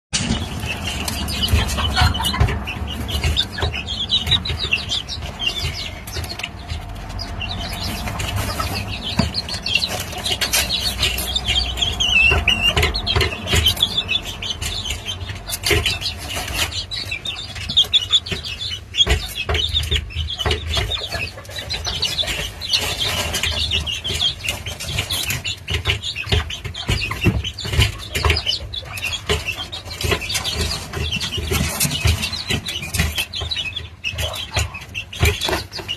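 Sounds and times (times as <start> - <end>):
hen calling: 0.3 - 19.8.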